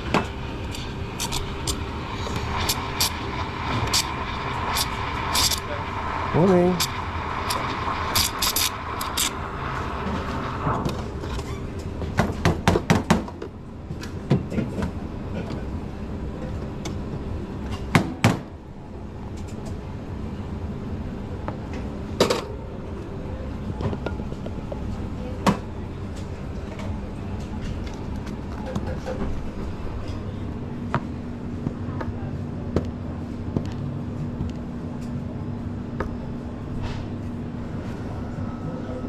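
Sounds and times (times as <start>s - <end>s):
steady rushing noise: 0.0s - 12.2s.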